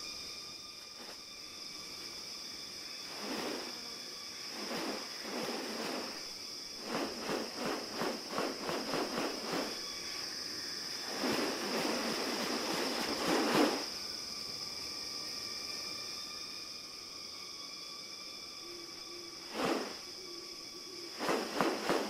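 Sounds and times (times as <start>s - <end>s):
high-pitched insect drone: 0.0s - 22.0s
rustling: 19.5s - 20.0s, 21.2s - 22.0s.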